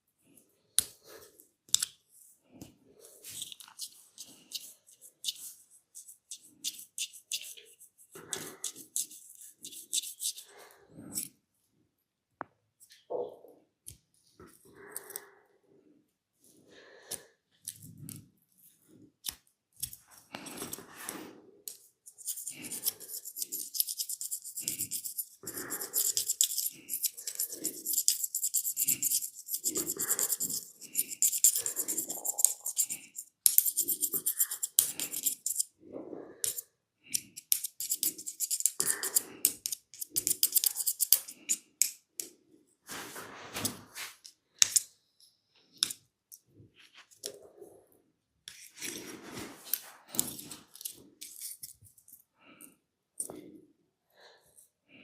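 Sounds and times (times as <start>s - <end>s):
soft rubs and pats: 42.9s - 44.3s, 48.5s - 50.7s.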